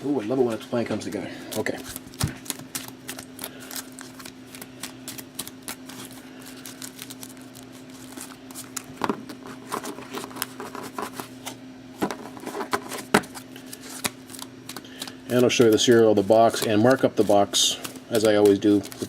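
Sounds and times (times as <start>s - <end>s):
low electrical hum: 0.0s - 19.0s
playing cards ticking and snapping: 1.5s - 8.9s, 13.1s - 19.0s.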